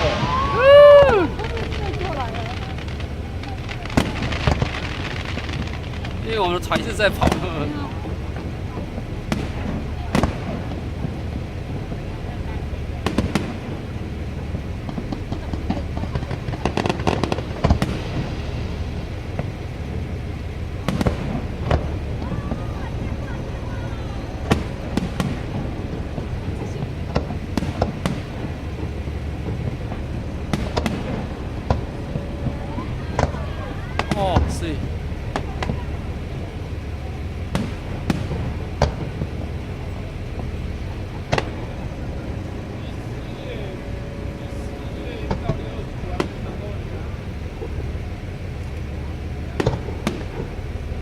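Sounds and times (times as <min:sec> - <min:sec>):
fireworks bangs: 0:00.0 - 0:51.0
low rumble of moving boat: 0:00.0 - 0:51.0.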